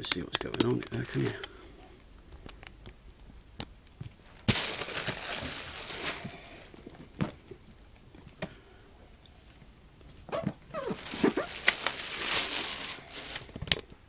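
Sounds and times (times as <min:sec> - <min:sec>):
cardboard packaging rustling: 0:04.1 - 0:07.4, 0:10.2 - 0:13.9.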